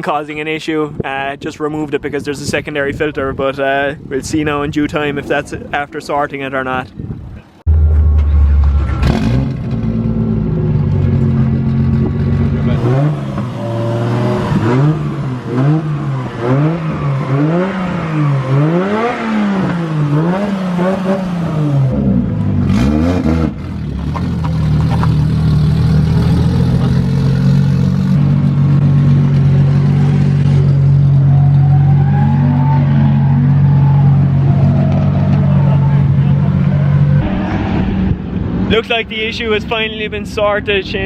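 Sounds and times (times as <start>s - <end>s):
car engine revving: 7.6s - 39.1s.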